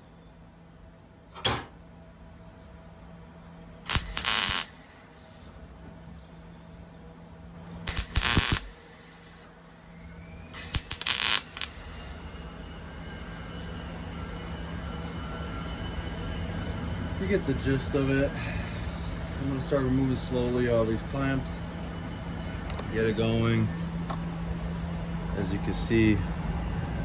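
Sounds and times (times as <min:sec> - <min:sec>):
low machine hum: 0:00.0 - 0:27.0
welding crackle: 0:03.9 - 0:05.5, 0:07.9 - 0:09.5, 0:10.6 - 0:12.5.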